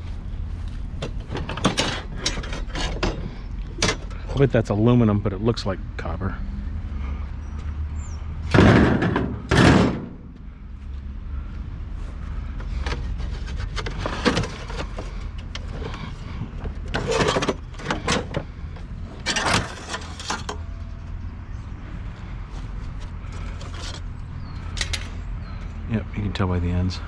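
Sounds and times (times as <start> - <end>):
scrap metal knocks and clatter: 1.0 - 4.3, 8.5 - 10.4, 12.6 - 20.7, 23.2 - 25.2
loud metal bangs: 8.5 - 10.4.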